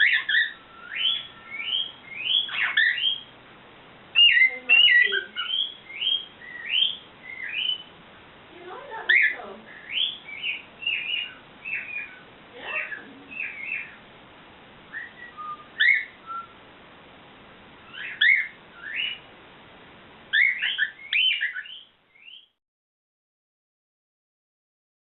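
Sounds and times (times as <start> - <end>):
cockatiel whistled chirps: 0.0 - 3.3, 4.2 - 7.9, 9.1 - 12.2, 13.3 - 14.0, 14.9 - 16.6, 17.8 - 19.3, 20.3 - 22.6.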